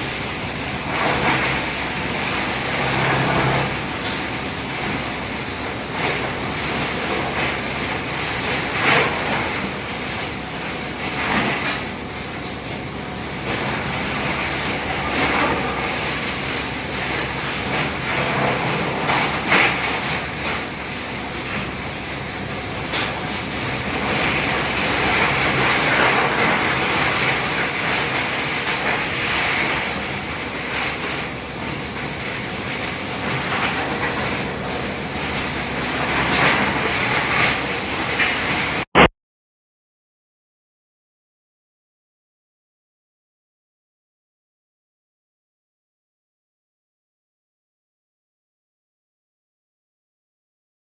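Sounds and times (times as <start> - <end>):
tub grinder grinding wood: 0.0 - 11.9, 12.6 - 38.8.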